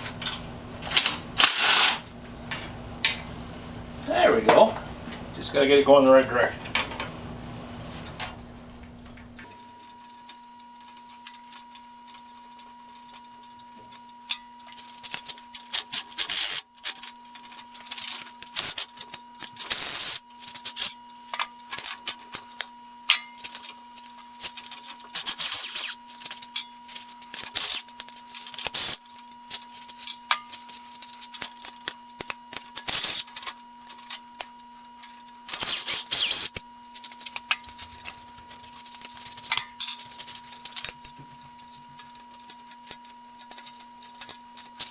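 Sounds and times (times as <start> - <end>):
metal parts clicking and clattering: 9.7 - 34.2, 35.0 - 41.1, 42.0 - 44.9.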